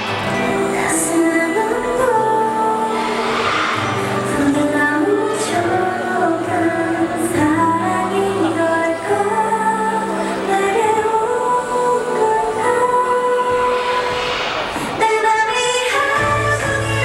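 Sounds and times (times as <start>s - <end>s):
pop song with female vocals: 0.0s - 17.0s.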